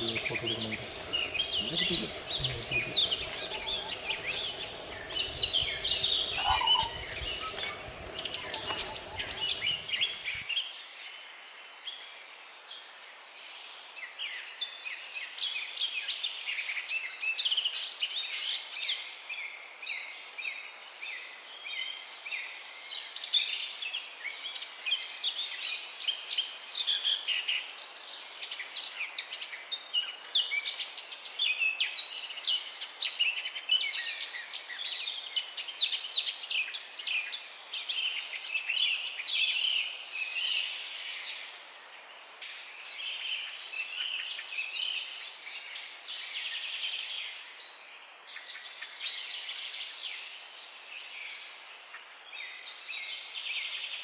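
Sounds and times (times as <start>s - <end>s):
steady hiss: 0.0s - 10.4s
small birds chirping: 0.0s - 10.7s.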